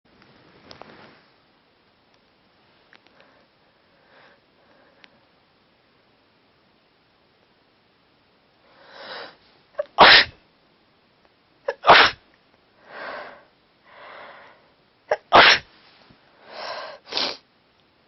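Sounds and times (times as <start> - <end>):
person sneezing: 9.8 - 10.4, 11.7 - 12.2, 15.1 - 15.7, 16.9 - 17.4.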